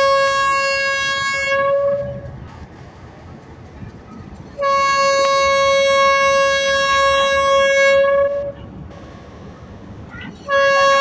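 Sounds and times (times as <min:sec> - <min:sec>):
locomotive horn blast: 0:00.0 - 0:02.3, 0:04.6 - 0:09.7, 0:10.4 - 0:11.0
locomotive low rumble: 0:00.0 - 0:11.0.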